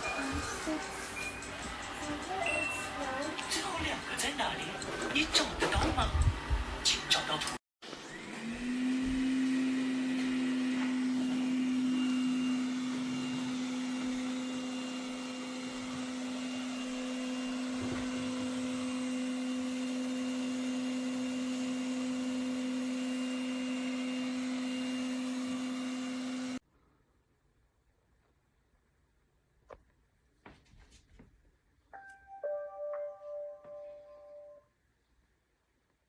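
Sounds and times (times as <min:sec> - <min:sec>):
robot vacuum motor humming: 0:00.0 - 0:05.4, 0:07.9 - 0:26.6.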